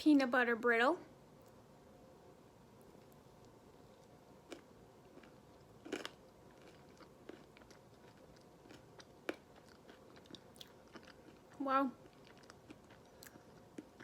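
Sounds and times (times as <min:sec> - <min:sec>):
biting and chewing a cookie: 0:02.9 - 0:14.0.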